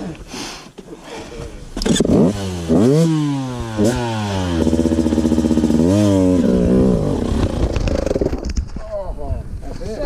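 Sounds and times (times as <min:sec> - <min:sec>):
dirt bike engine revving: 0:01.8 - 0:08.4.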